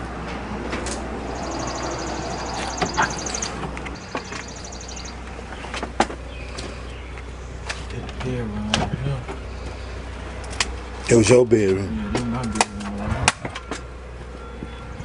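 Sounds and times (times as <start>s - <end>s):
bird's high rapid trill: 1.3s - 5.2s.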